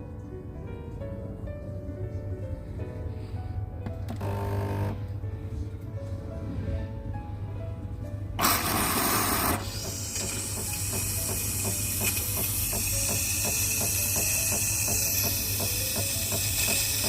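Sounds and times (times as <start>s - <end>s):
espresso machine hissing: 4.2s - 4.9s, 8.4s - 17.0s.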